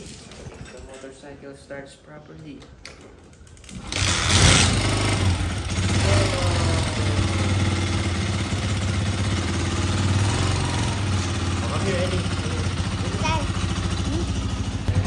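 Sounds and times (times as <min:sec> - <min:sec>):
motorcycle engine starting and revving: 0:03.5 - 0:15.0.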